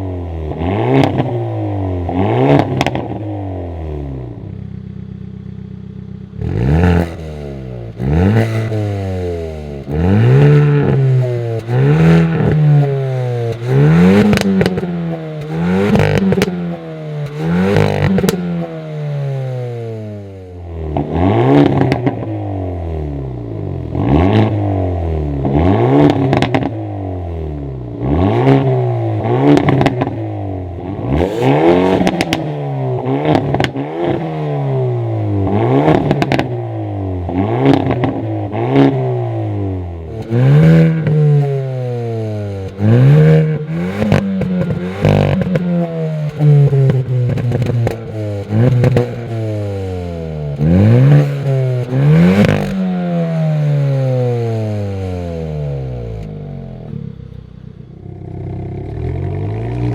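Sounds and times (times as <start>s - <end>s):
car engine revving: 0.0s - 59.9s
exhaust pops and crackles: 2.5s - 3.1s, 13.5s - 16.6s, 17.2s - 18.4s, 20.9s - 22.3s, 25.4s - 26.8s, 31.9s - 32.5s, 33.3s - 34.2s, 35.9s - 36.6s, 42.6s - 52.8s, 56.1s - 59.9s.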